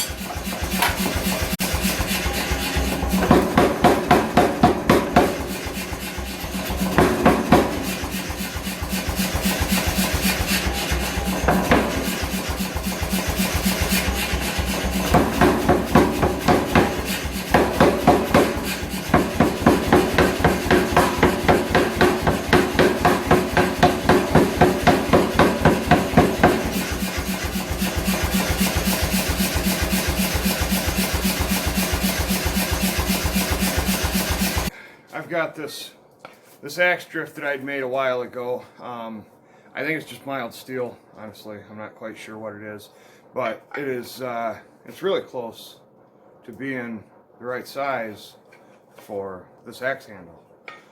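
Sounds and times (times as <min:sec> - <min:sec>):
hammer blows on hot iron: 0:00.0 - 0:34.8.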